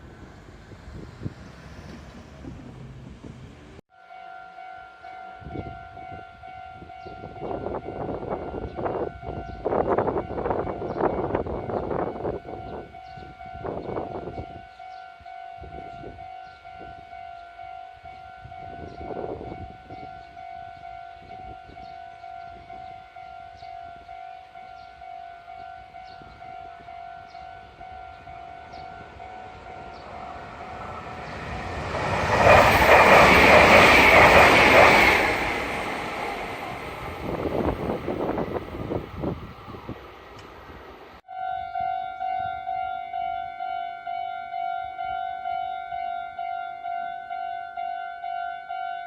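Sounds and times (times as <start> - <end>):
train passing: 0.0 - 3.8, 16.2 - 41.2
railroad crossing bell ringing: 4.0 - 38.9, 41.3 - 49.0.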